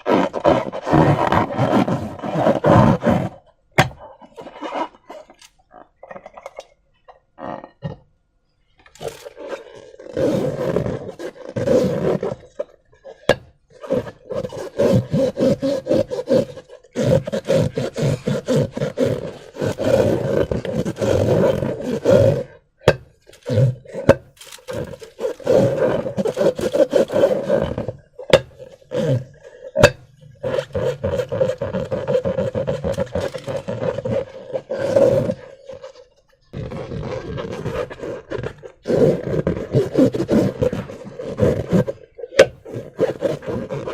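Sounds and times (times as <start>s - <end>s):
slime and balloons squishing: 15.8s - 43.9s.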